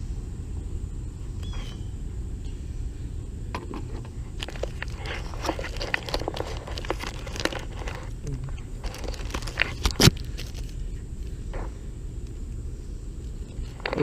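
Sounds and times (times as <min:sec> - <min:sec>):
low background rumble: 0:00.0 - 0:14.0.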